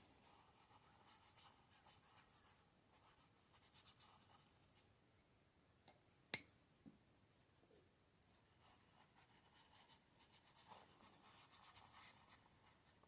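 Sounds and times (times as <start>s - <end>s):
paintbrush scratching on paper: 0.0s - 4.9s, 8.3s - 13.0s.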